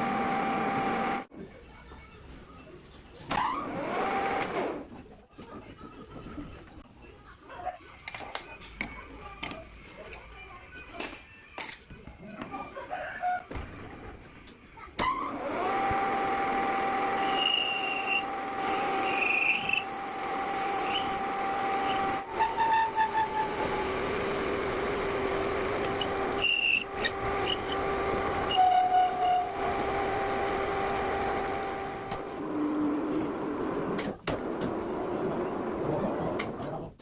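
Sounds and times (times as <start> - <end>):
metal lathe cutting metal: 15.5 - 32.4
short high squeaks: 17.2 - 20.0, 25.9 - 27.8, 28.4 - 29.6.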